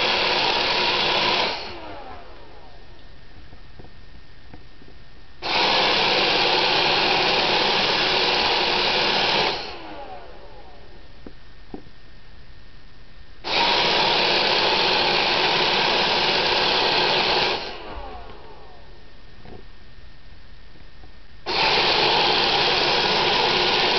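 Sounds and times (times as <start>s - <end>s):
robot vacuum motors cycling: 0.0s - 3.1s, 5.4s - 11.0s, 13.4s - 19.0s, 21.5s - 23.9s.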